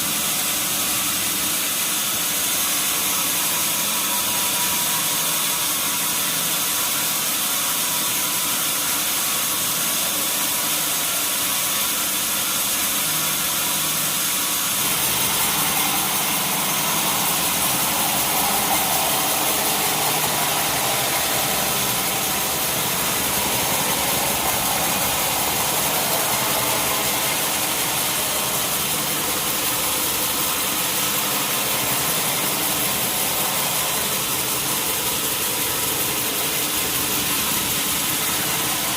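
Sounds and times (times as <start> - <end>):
sawmill machinery running: 0.0 - 38.9
mid-pitched band of sound: 14.8 - 38.9.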